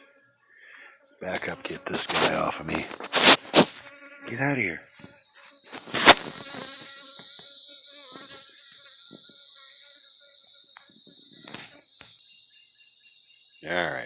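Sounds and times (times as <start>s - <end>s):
high-pitched insect chorus: 0.0s - 14.0s
honeybees buzzing: 0.0s - 14.0s
sharp knock: 3.0s - 3.7s.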